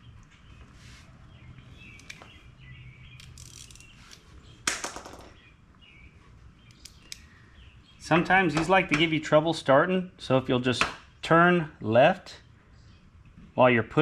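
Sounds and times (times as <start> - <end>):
birds chirping: 0.0 - 9.5
light clicks of bolts: 1.9 - 2.3.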